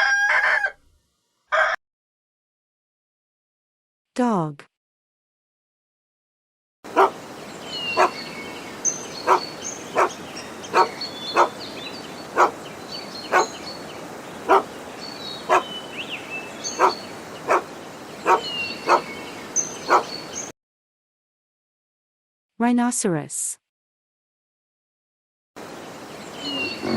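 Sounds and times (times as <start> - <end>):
birds chirping: 6.9 - 20.5, 25.6 - 26.9
dog barking: 7.0 - 7.2, 8.0 - 8.2, 9.2 - 9.4, 10.0 - 11.6, 12.4 - 12.6, 13.3 - 13.5, 14.5 - 14.7, 15.5 - 15.7, 16.8 - 19.1, 19.8 - 20.1.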